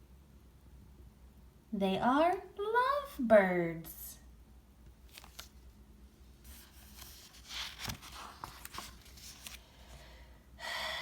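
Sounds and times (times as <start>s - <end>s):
paper pages rustling: 4.9s - 10.0s.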